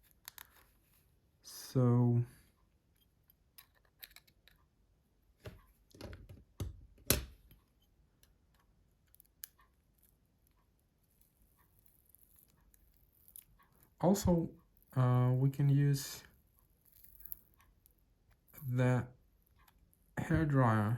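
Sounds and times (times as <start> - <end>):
small tools clicking and tapping: 2.9 - 4.7, 5.4 - 14.0.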